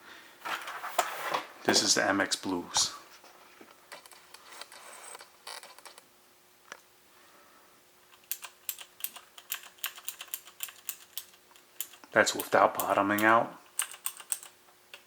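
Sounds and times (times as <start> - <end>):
clicky mechanical keyboard keystrokes: 8.2 - 15.0.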